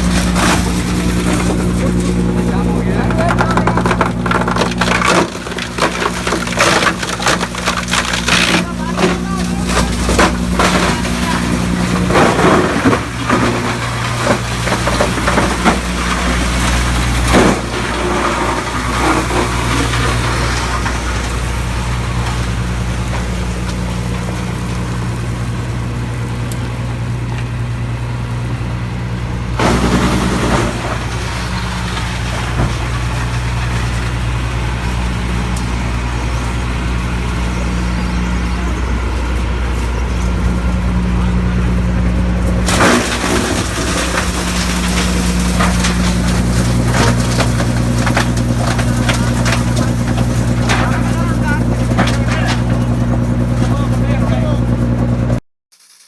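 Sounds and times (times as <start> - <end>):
wood chipper running: 0.0 - 55.4.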